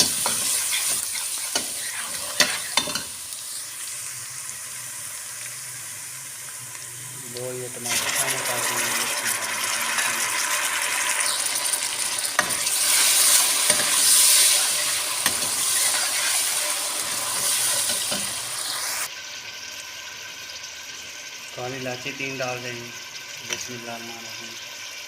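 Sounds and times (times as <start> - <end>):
spoon scraping pan: 0.0 - 3.2, 11.1 - 18.9
tomatoes sizzling in oil: 0.0 - 25.0.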